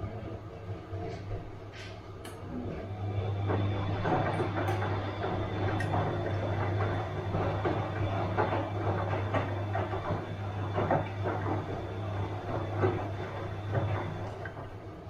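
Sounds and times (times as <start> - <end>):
washing machine running: 0.0 - 15.0.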